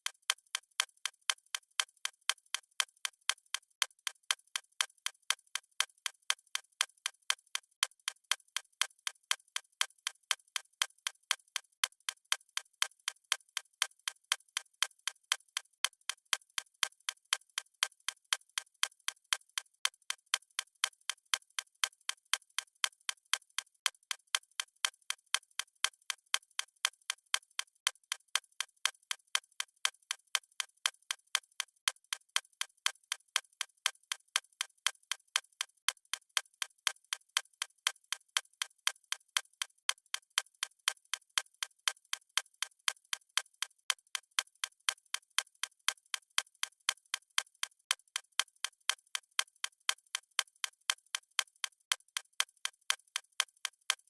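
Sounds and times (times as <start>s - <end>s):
watch ticking: 31.9s - 54.0s.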